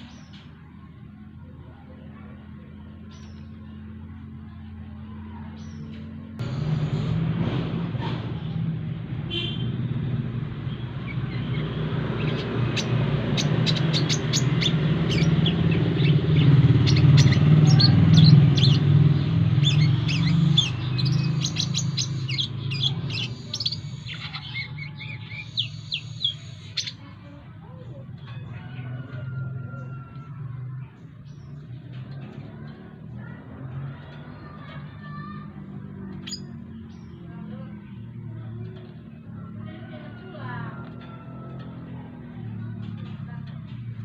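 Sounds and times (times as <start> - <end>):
road traffic rumble: 0.0 - 44.0
bird chirping and twittering: 2.9 - 3.8, 5.5 - 7.2, 10.6 - 30.3, 35.9 - 38.0.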